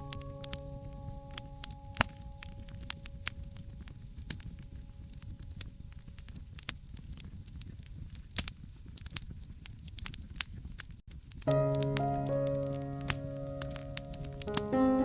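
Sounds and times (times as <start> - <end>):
soft background music chord: 0.0 - 5.3, 11.5 - 15.0
fireplace fire crackling: 0.0 - 15.0.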